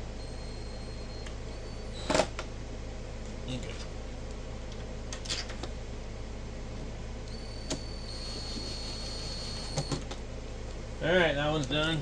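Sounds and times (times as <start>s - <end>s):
faint high-pitched whine: 0.0s - 4.3s, 6.7s - 10.3s
low electrical hum: 0.0s - 12.0s.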